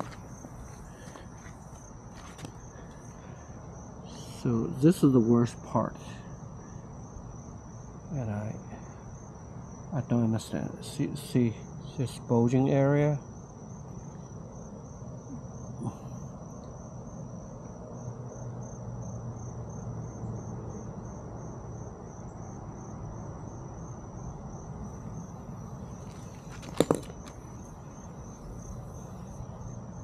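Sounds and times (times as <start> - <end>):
low background hum: 0.0 - 19.3
crickets chirping: 0.0 - 30.0.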